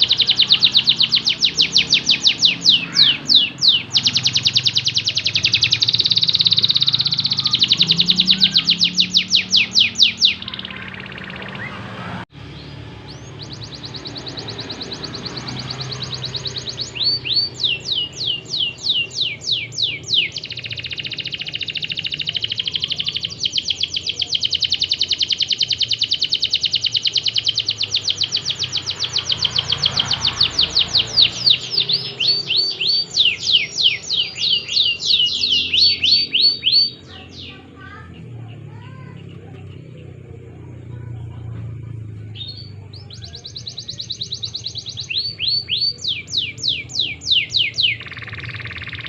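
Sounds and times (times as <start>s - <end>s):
canary singing: 0.0s - 49.0s.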